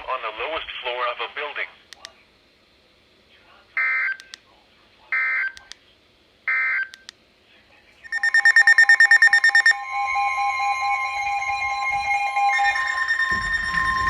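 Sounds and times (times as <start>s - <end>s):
pulsing electronic alert tone: 8.0s - 14.0s
screechy digital data bursts: 8.1s - 14.0s.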